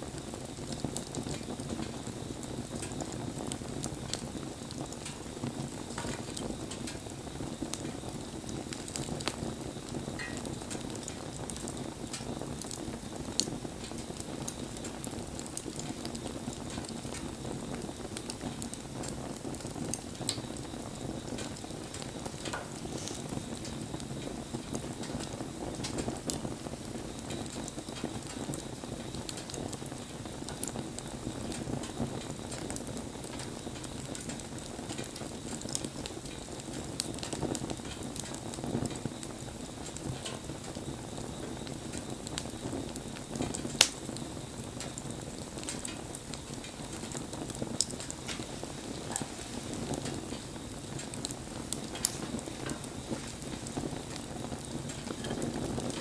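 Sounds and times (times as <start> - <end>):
campfire flame rushing: 0.0 - 56.0
sharp fire pops: 0.0 - 56.0
fine crackling: 45.6 - 56.0.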